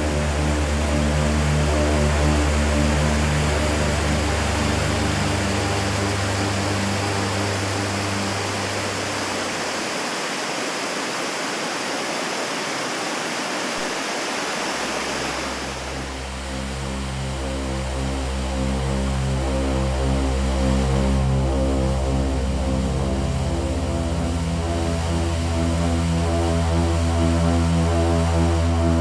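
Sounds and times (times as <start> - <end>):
low steady tones: 0.0 - 10.0
waterfall roaring: 0.0 - 16.3.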